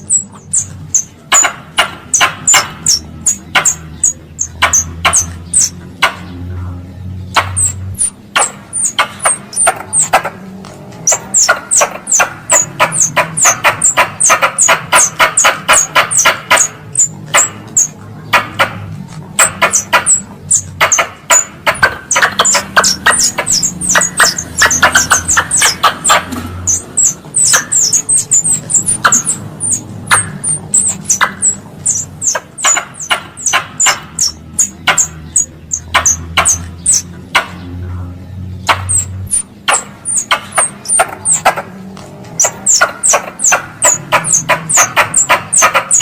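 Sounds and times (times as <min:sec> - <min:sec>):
squirrel chirping calls: 0:00.0 - 0:46.0.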